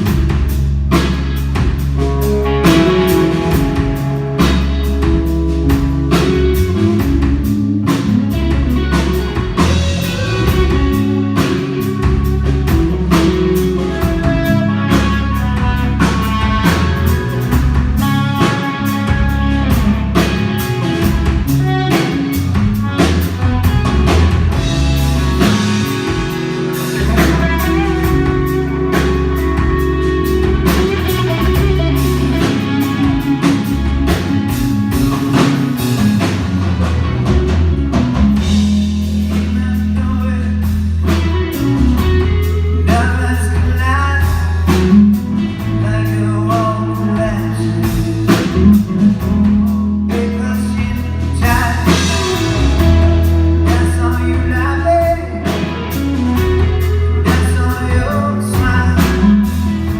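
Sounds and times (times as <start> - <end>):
live rock band playing: 0.0 - 59.9
person singing: 42.5 - 56.0, 56.8 - 59.9.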